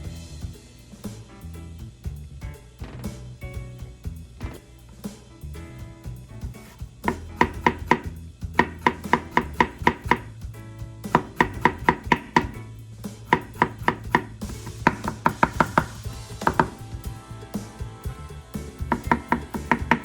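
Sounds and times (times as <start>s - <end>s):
quiet background music: 0.0s - 20.0s
knife chopping on cutting board: 8.6s - 10.2s, 11.2s - 12.6s, 13.3s - 14.3s.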